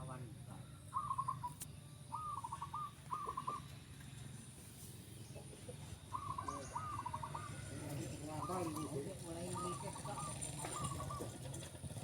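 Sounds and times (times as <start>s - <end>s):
doves cooing: 2.1s - 3.8s, 6.0s - 12.0s.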